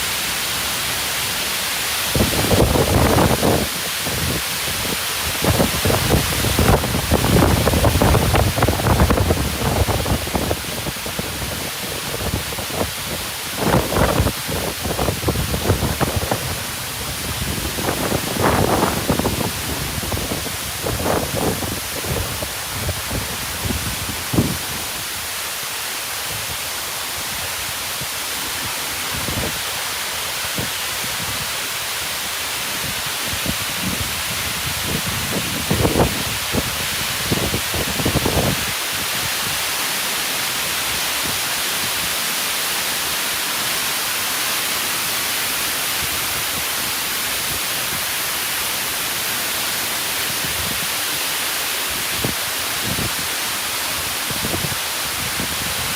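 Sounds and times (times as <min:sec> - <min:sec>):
waterfall rushing: 0:00.0 - 0:55.9
wind buffeting microphone: 0:02.1 - 0:24.9, 0:32.8 - 0:39.6.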